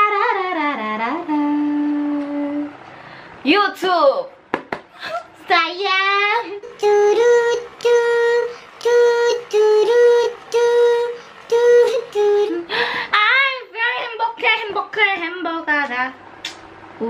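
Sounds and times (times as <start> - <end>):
woman singing high notes: 5.7 - 14.2.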